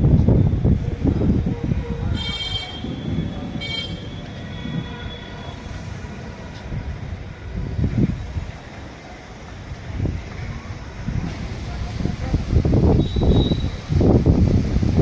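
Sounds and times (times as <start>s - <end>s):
steady low rumble: 0.0s - 15.0s
horn toots: 2.1s - 5.7s.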